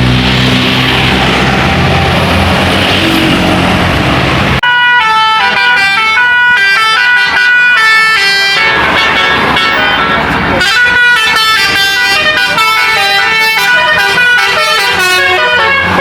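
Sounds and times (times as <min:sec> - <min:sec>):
bus engine and road noise: 0:00.0 - 0:16.0
bus horn playing high notes: 0:04.6 - 0:16.0.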